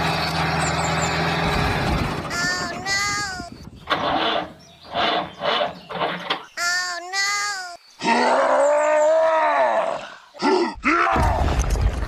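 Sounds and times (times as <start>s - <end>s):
animal calling: 2.3s - 10.0s.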